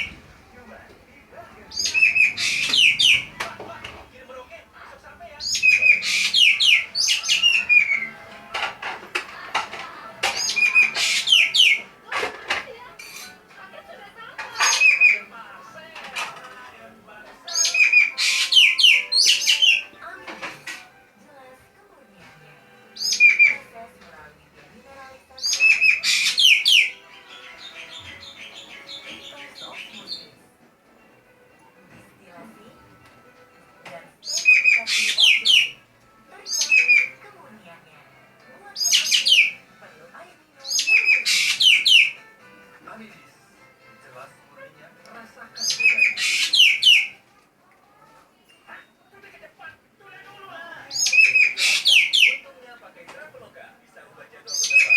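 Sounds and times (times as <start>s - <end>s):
magpie shrill calls: 1.7s - 3.5s, 5.4s - 8.2s, 10.3s - 11.9s, 14.5s - 15.3s, 17.5s - 20.0s, 22.9s - 23.7s, 25.4s - 30.3s, 34.2s - 35.8s, 36.4s - 37.2s, 38.8s - 39.7s, 40.6s - 42.2s, 45.6s - 47.2s, 50.9s - 52.5s, 54.5s - 54.9s.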